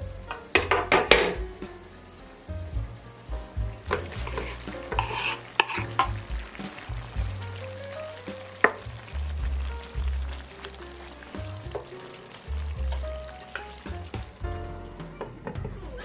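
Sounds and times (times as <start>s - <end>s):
background music: 0.0s - 16.0s
food sizzling in a pan: 0.0s - 16.0s
utensil stirring and scraping pan: 3.8s - 6.9s.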